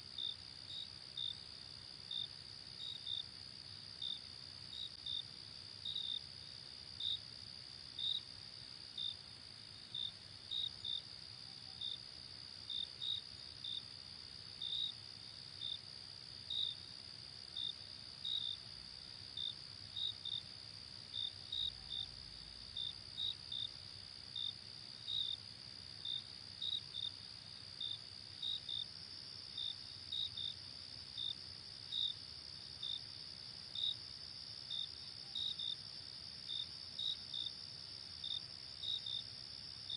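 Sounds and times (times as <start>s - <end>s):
chorus of crickets trilling: 0.0s - 39.9s
cricket chirping: 0.0s - 39.9s.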